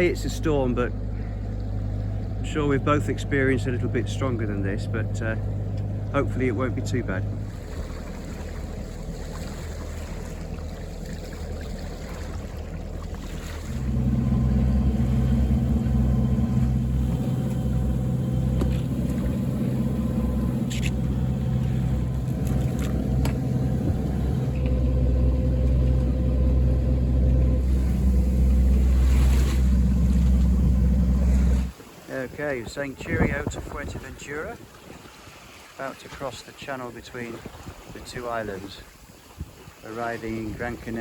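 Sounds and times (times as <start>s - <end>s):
boat engine droning: 0.0s - 41.0s.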